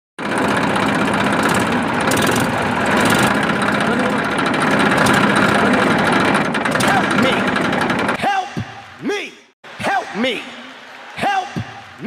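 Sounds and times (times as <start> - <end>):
small engine idling: 0.2 - 8.2.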